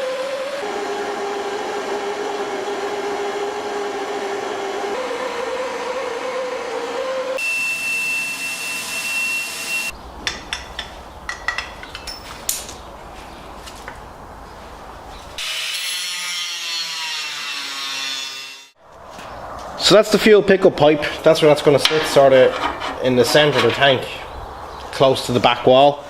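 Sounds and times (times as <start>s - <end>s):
power tool whining: 0.5s - 10.0s.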